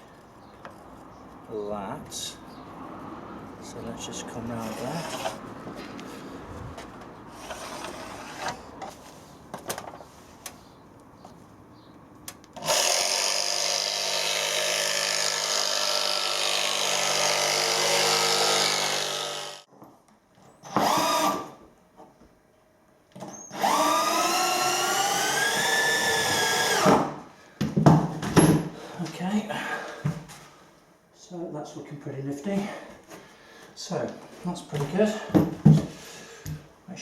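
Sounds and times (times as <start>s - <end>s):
cordless power tool running: 12.6s - 19.7s.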